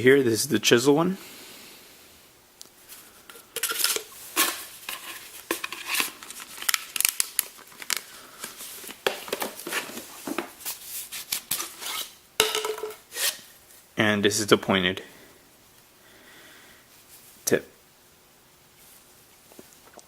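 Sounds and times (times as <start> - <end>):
handling rustles and knocks: 2.7 - 13.9.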